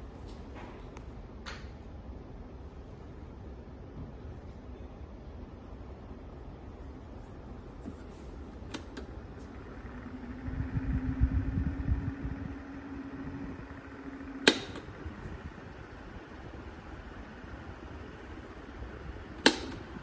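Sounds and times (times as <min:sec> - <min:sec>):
fan airflow on microphone: 0:00.0 - 0:20.0
fan motor humming: 0:00.0 - 0:20.0
sharp switch click: 0:14.4 - 0:14.9, 0:19.4 - 0:19.8.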